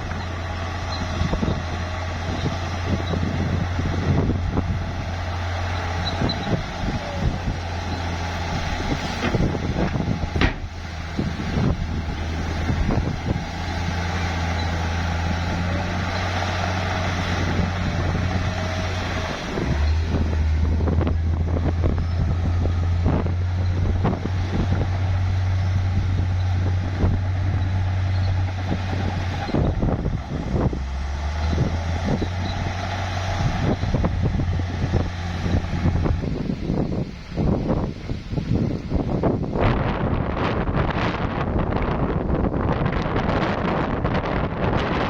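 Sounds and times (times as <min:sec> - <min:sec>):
bulldozer diesel engine droning: 0:00.0 - 0:45.0
metal knocks and clanks: 0:09.0 - 0:10.8.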